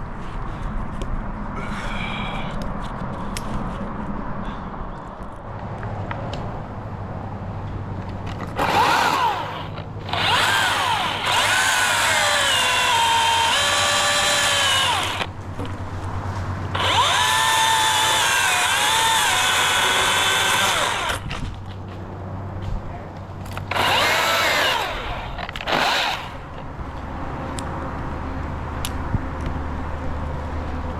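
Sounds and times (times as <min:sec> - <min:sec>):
electric chainsaw cutting wood: 0:08.6 - 0:15.4, 0:16.7 - 0:21.4, 0:23.6 - 0:26.6.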